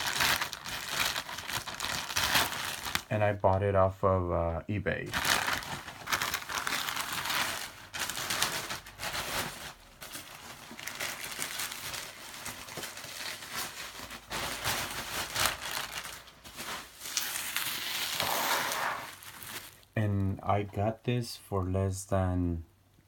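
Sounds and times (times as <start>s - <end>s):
packaging crinkling and rustling: 0.0s - 3.5s, 5.1s - 20.0s.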